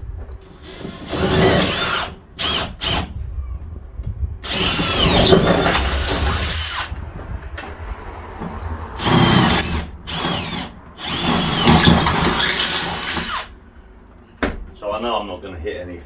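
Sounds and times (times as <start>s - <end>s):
power drill boring holes: 0.5s - 3.1s, 4.4s - 6.9s, 9.0s - 13.5s.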